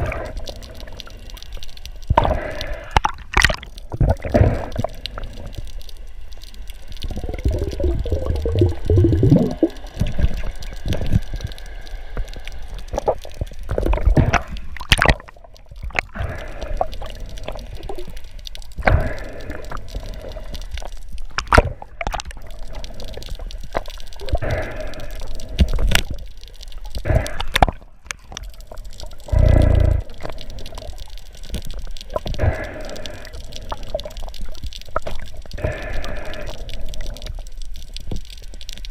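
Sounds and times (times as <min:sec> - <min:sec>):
water sloshing and bubbling: 0:00.0 - 0:38.9
splashes and knocks: 0:13.8 - 0:15.4.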